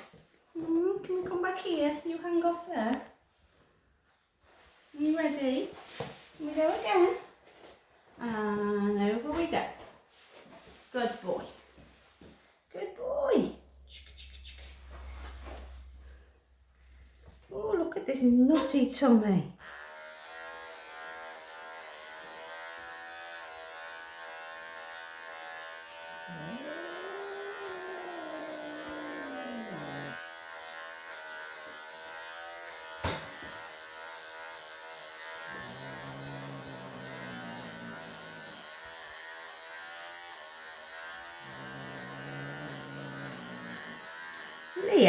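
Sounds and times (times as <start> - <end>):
electric clippers buzzing: 19.6 - 45.0.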